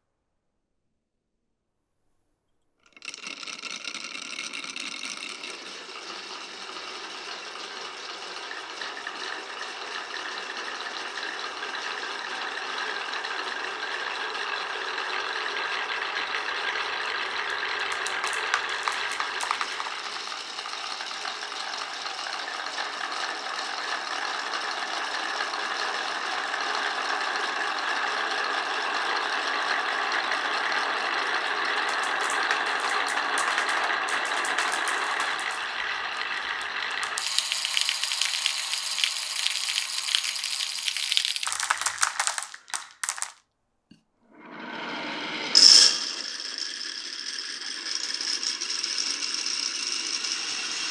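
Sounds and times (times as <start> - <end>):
glass marbles rolling on a marble run: 2.9 - 43.4, 45.6 - 50.9.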